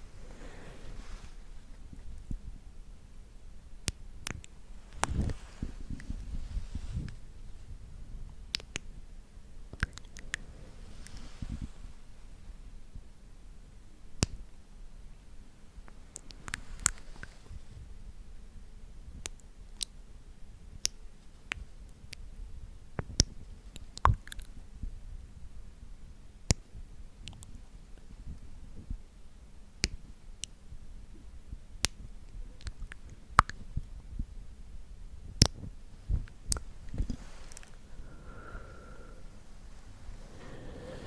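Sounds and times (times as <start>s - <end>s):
wet mouth clicks: 9.8s - 10.4s, 27.2s - 27.6s, 32.6s - 33.6s, 36.2s - 41.0s.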